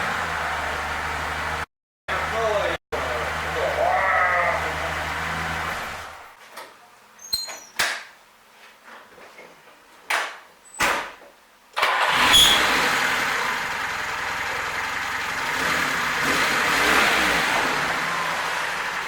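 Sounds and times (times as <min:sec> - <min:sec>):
car engine starting and idling: 0:11.8 - 0:19.0.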